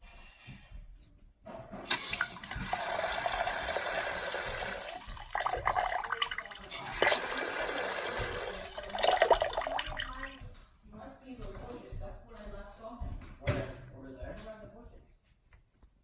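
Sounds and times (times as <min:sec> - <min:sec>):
faucet running into sink: 0:01.8 - 0:10.4.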